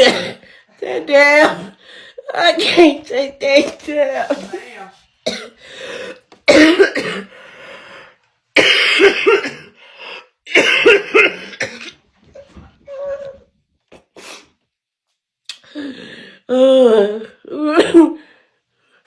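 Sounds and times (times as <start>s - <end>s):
woman coughing hard: 0.0s - 0.5s, 4.4s - 5.6s, 6.4s - 7.3s, 8.6s - 9.8s, 10.5s - 12.0s.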